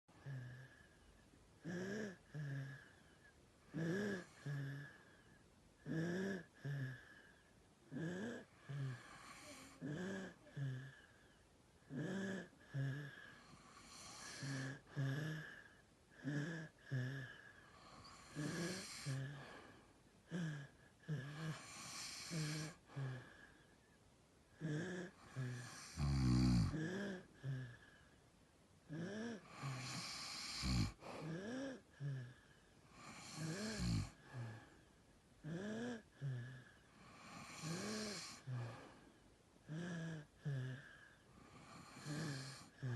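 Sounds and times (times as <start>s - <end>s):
people snoring: 3.7s - 5.0s, 7.9s - 11.0s, 11.9s - 15.6s, 16.2s - 23.5s, 24.6s - 27.9s, 28.9s - 32.4s, 33.0s - 34.7s, 35.4s - 39.0s, 39.7s - 42.9s.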